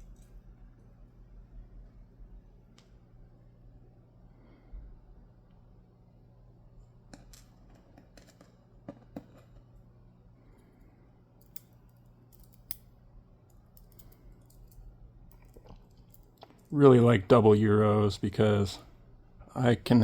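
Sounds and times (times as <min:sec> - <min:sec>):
small metal parts clicking: 0:11.4 - 0:12.9, 0:13.5 - 0:16.7.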